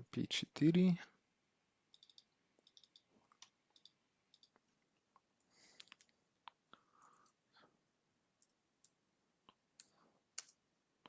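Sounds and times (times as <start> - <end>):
keyboard and mouse clicking: 1.9 - 4.6, 8.4 - 10.6.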